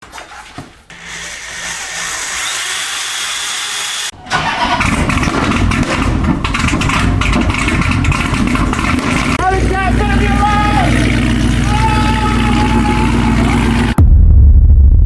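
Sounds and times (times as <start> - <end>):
car engine starting and running: 3.9 - 14.0.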